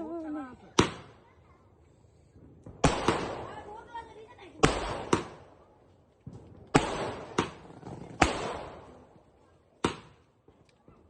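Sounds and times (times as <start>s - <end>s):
firework bangs: 2.3s - 9.2s.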